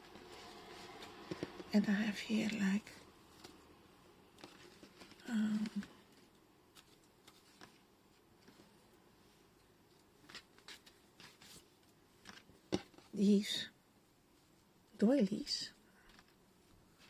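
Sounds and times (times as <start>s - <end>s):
paper rustling and tapping: 0.0s - 1.8s, 9.9s - 13.2s.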